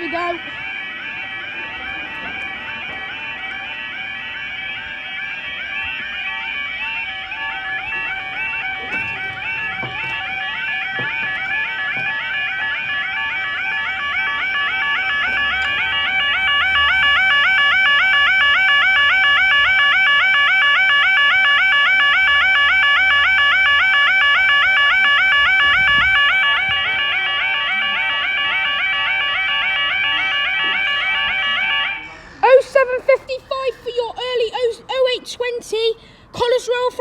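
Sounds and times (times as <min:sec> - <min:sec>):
level-crossing yodel alarm warbling: 0:00.0 - 0:37.0.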